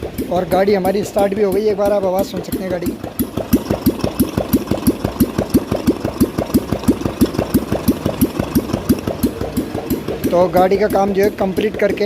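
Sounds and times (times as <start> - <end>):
motorcycle engine idling: 0.0 - 12.0.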